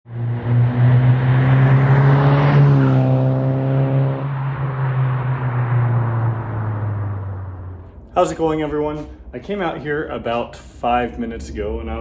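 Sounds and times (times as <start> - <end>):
car engine running: 0.1 - 12.0.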